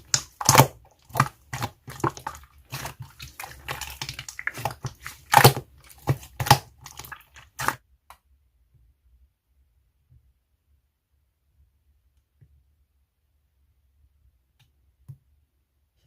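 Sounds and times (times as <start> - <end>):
slime squishing and popping: 0.0 - 7.8.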